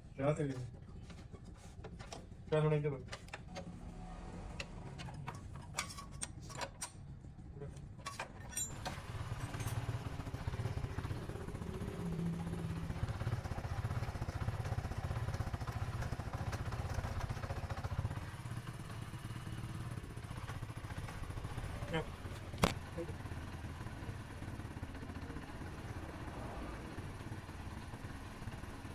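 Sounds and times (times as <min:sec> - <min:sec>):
motorcycle engine running: 0:08.6 - 0:28.9.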